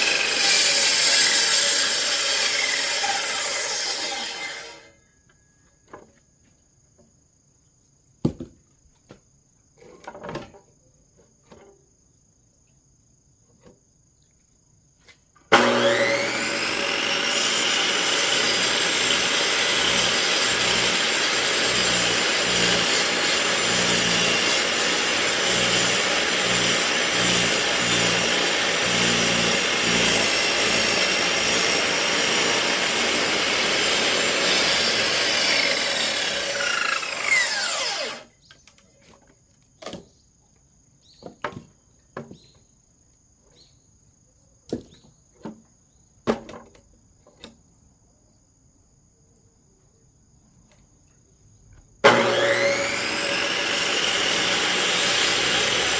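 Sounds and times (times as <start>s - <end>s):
electric saw cutting firewood: 0.0s - 4.9s, 15.5s - 38.3s, 52.0s - 55.9s.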